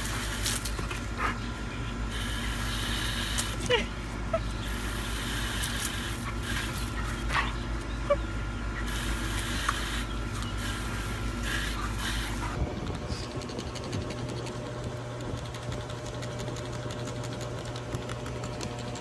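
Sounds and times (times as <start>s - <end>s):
steady background hum: 0.0s - 19.0s
dog whining: 2.2s - 5.0s, 6.1s - 9.1s.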